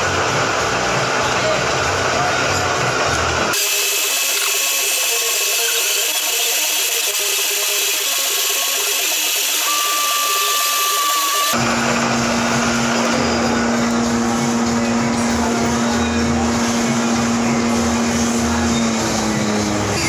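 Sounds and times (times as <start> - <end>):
metal-cutting machine: 2.8 - 20.0
thin whistling tone: 8.5 - 11.6.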